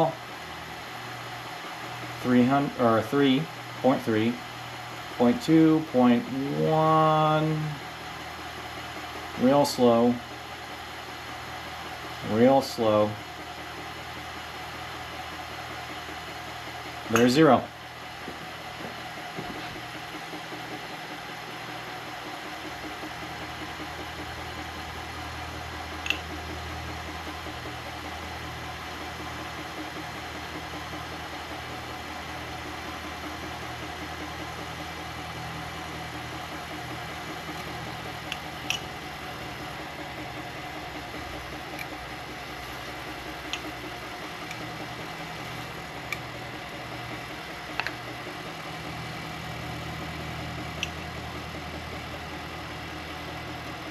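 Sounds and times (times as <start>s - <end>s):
milling machine cutting: 22.4s - 53.9s.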